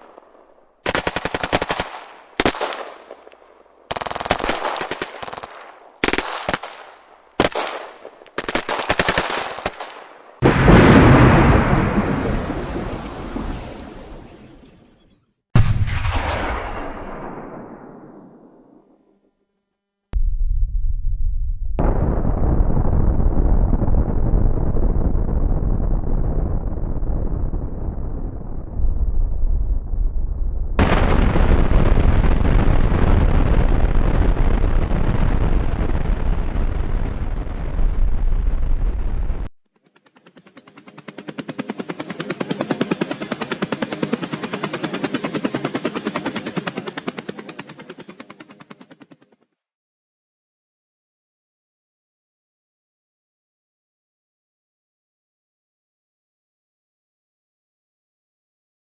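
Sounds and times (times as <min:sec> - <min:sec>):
explosion blast: 0:10.4 - 0:14.6, 0:15.6 - 0:18.6, 0:20.2 - 0:39.5
loud deep rumble: 0:20.2 - 0:39.5.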